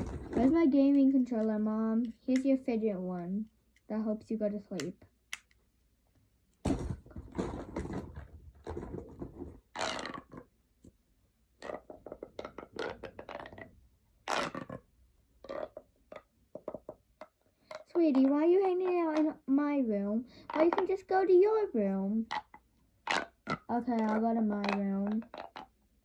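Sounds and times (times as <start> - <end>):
scraping and rustling: 0.0 - 1.6, 6.7 - 10.4.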